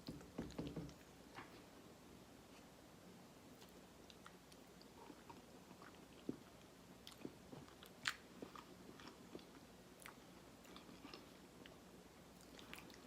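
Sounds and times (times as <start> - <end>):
person chewing: 3.6 - 11.8, 12.4 - 13.0.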